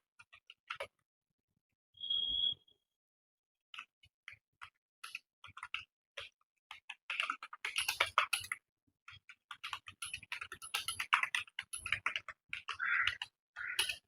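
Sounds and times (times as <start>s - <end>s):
keyboard typing: 4.6s - 14.0s.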